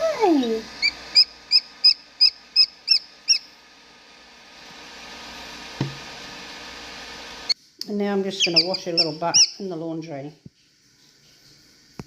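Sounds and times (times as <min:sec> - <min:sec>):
chick peeping: 0:00.8 - 0:03.4, 0:08.4 - 0:09.6
soft knock: 0:05.8 - 0:06.0.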